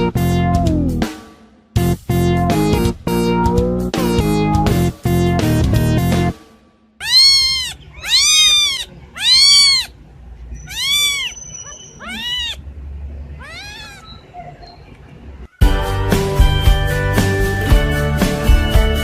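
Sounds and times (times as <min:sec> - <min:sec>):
cat meowing: 0:07.0 - 0:12.7, 0:13.3 - 0:14.5.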